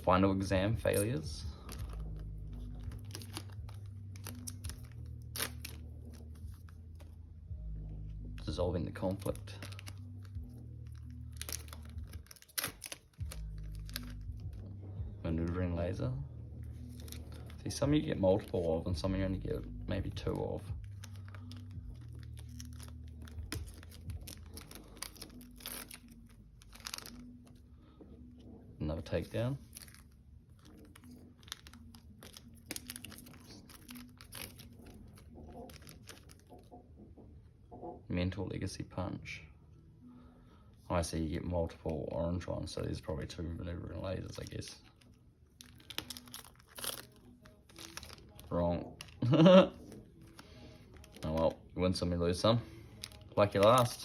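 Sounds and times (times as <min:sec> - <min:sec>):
cards rustling and clicking: 0:00.3 - 0:07.2, 0:07.8 - 0:15.9, 0:16.6 - 0:27.7, 0:29.2 - 0:36.7, 0:43.9 - 0:51.7, 0:52.6 - 0:54.0
foil wrappers crinkling: 0:00.4 - 0:07.1, 0:08.3 - 0:14.8, 0:16.6 - 0:28.0, 0:29.0 - 0:36.7, 0:43.9 - 0:54.0.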